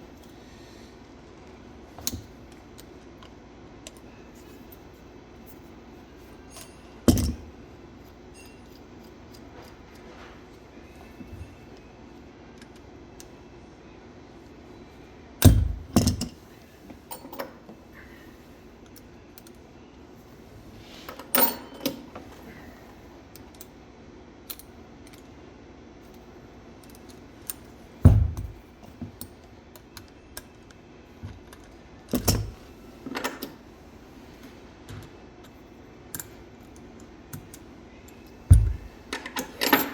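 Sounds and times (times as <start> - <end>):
metal parts knocking and clinking: 6.5 - 7.5, 8.4 - 9.4, 15.4 - 16.4, 17.1 - 17.6, 28.1 - 28.6, 32.1 - 33.5, 36.2 - 39.9.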